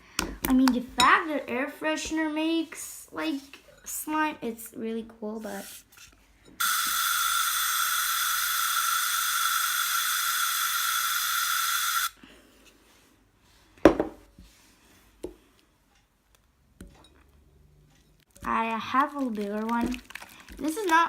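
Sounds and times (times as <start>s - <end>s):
aerosol can spraying: 6.6s - 12.1s.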